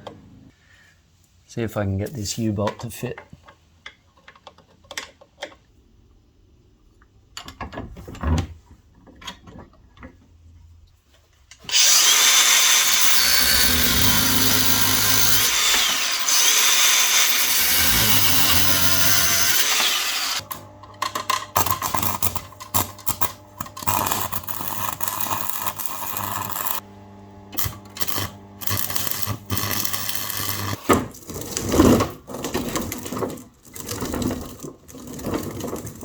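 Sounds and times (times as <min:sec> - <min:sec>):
power tool running: 0:11.7 - 0:30.9.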